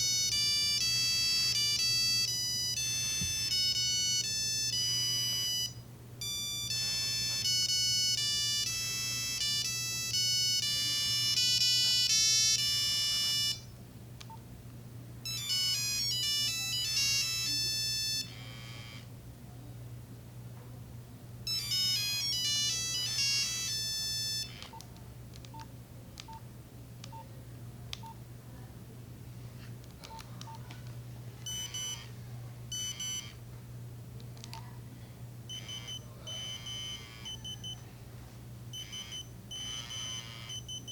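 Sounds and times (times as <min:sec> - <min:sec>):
mobile phone ringtone melodies: 0:00.0 - 0:13.7, 0:15.2 - 0:19.0, 0:21.5 - 0:24.6, 0:31.5 - 0:32.1, 0:32.7 - 0:33.4, 0:35.5 - 0:37.9, 0:38.7 - 0:40.9
low steady hum: 0:00.0 - 0:40.9
short beeps: 0:35.5 - 0:37.8, 0:38.8 - 0:40.9.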